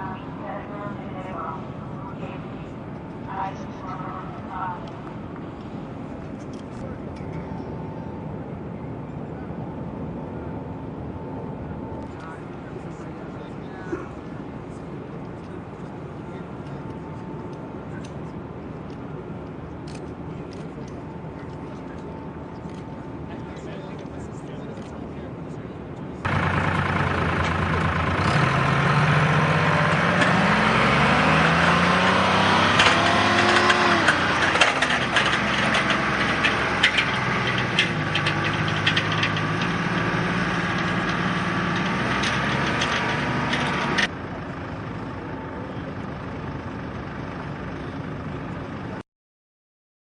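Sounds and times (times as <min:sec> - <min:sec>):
engine running: 0:00.0 - 0:49.0
sharp clicks and knocks: 0:32.6 - 0:44.1.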